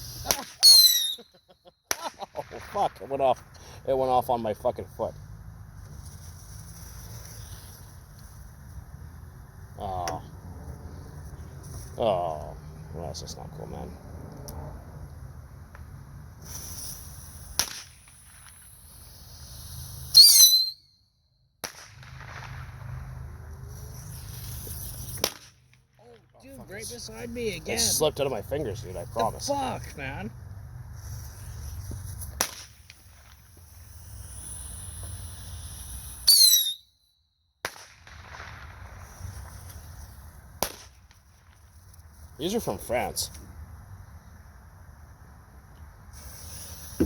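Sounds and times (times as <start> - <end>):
firecracker bang with crackle: 0.0 - 1.2, 1.8 - 3.6, 16.4 - 20.8, 21.6 - 25.9, 31.0 - 36.8, 37.6 - 41.8, 46.1 - 47.0
small firecracker crack: 0.0 - 3.7, 15.6 - 20.8, 21.6 - 26.6, 31.0 - 36.8, 37.6 - 42.4.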